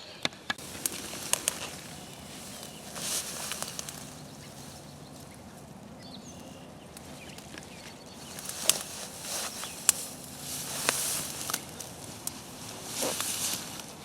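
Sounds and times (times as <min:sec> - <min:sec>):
twigs snapping: 0:00.5 - 0:05.4, 0:06.9 - 0:14.0
footsteps on dry leaves: 0:00.6 - 0:14.0.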